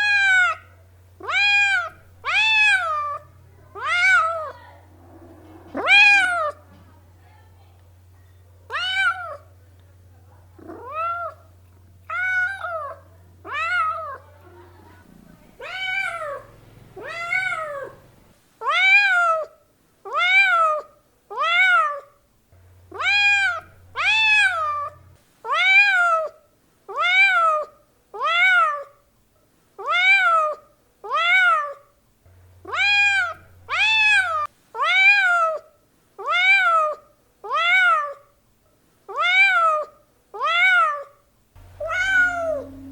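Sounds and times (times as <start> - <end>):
cat meowing: 0.0 - 6.6, 8.7 - 9.5, 10.6 - 11.5, 12.1 - 14.3, 15.0 - 19.5, 20.1 - 22.2, 22.9 - 28.9, 29.8 - 31.9, 32.6 - 38.3, 39.1 - 42.9.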